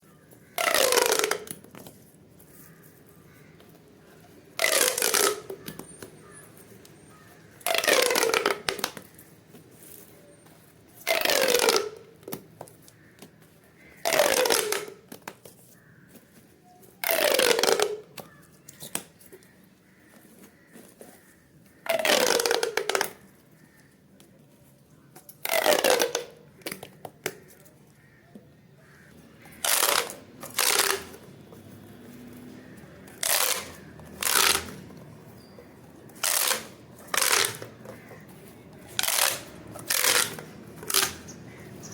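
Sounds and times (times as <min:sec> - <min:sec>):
pop toy crunching when squeezed: 0:00.4 - 0:01.6, 0:33.1 - 0:34.8.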